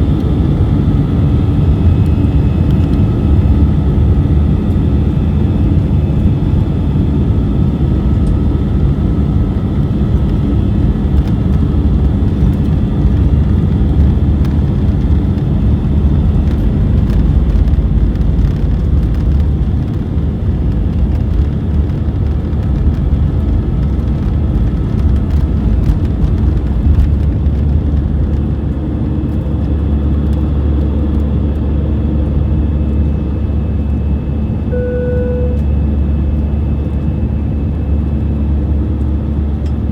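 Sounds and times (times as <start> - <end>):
airliner cabin rumble: 0.0 - 39.9
faint high engine tones: 31.5 - 39.9.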